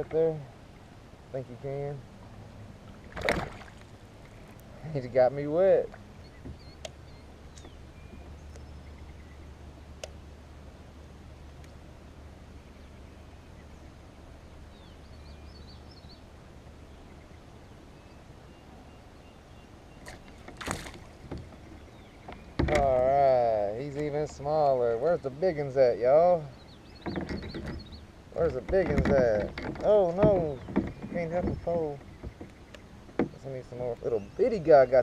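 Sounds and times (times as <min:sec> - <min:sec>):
steady low rumble: 0:00.0 - 0:35.0
rushing splash: 0:03.0 - 0:03.9
faint bird chirps: 0:05.8 - 0:09.6.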